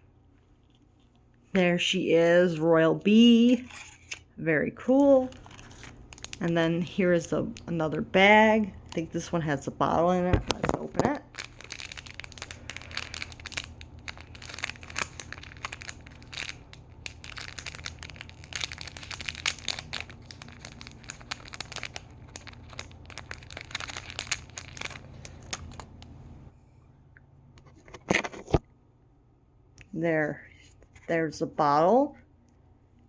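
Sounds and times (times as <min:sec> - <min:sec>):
plastic bag crinkling and tearing: 0:04.9 - 0:09.3, 0:10.4 - 0:26.1.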